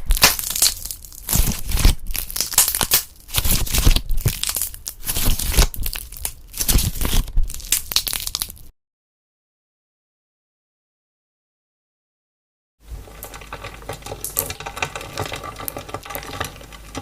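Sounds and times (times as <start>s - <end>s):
slime squished by hand: 0.0s - 8.7s.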